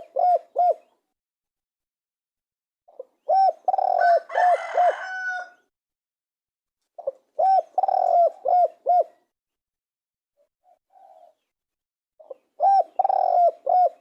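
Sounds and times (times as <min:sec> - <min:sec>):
dove cooing: 0:00.0 - 0:00.9, 0:02.9 - 0:05.5, 0:07.0 - 0:09.3, 0:12.2 - 0:14.0.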